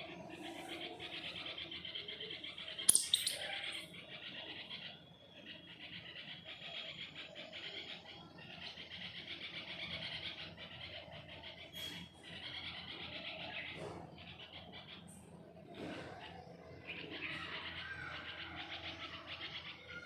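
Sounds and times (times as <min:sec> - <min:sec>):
squirrels chirping: 0:00.0 - 0:15.4.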